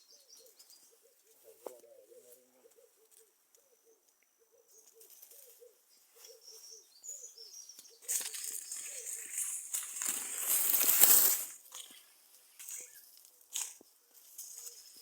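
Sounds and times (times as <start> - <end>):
bird hooting: 0.1 - 8.1
loud rustling: 9.8 - 11.6.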